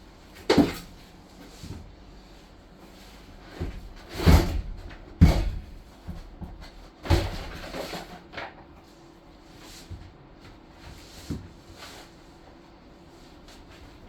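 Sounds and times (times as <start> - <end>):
heavy clunks and knocks: 3.6 - 7.6.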